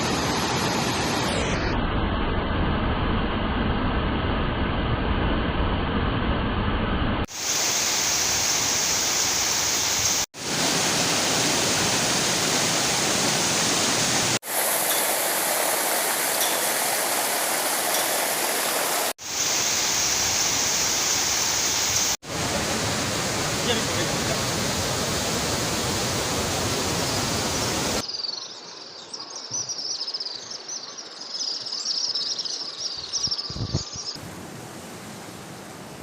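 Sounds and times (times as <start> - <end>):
rushing water: 0.0 - 1.5, 7.3 - 28.0, 34.2 - 36.0.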